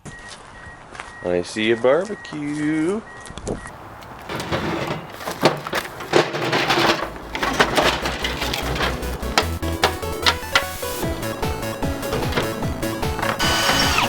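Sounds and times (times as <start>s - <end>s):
knocks and clatter: 3.7s - 14.0s.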